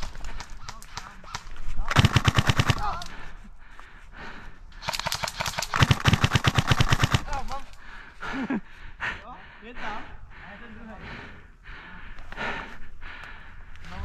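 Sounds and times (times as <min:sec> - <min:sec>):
faint scattered shots: 0:00.0 - 0:03.2, 0:04.8 - 0:07.7
airsoft gun full-auto bursts: 0:01.8 - 0:03.1, 0:04.8 - 0:07.7.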